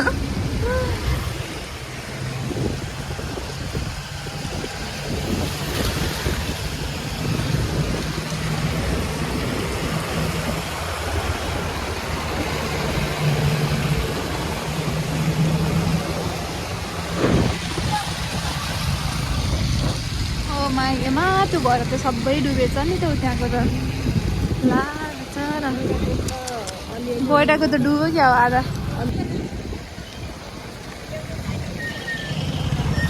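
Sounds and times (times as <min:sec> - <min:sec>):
background noise rush: 0:00.0 - 0:33.0
vehicle engines humming: 0:00.0 - 0:33.0.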